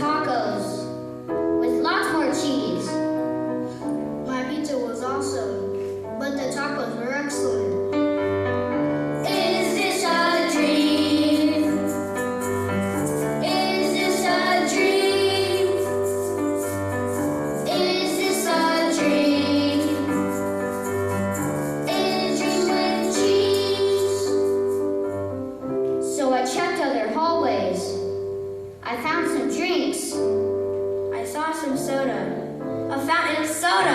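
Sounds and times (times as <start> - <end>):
instrumental backing with bass line: 7.5 - 26.1
young people singing: 9.2 - 12.0, 13.4 - 16.2, 17.6 - 20.4, 21.8 - 24.5.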